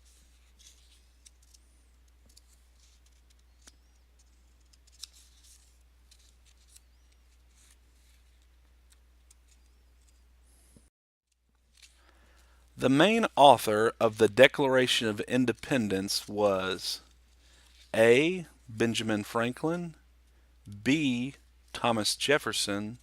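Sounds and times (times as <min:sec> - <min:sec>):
steady low hum: 0:12.0 - 0:23.0.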